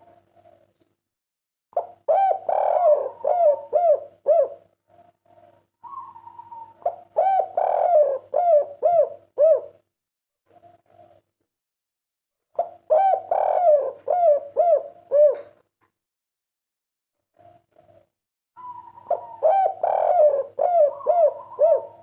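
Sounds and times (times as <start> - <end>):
dove cooing: 1.8 - 9.8, 12.6 - 15.6, 18.6 - 22.0.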